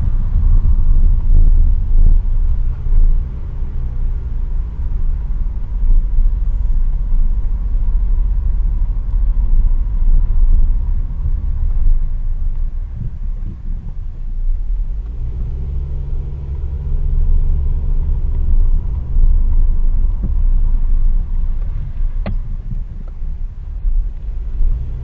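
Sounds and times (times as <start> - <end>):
car road and engine noise: 0.0 - 25.0.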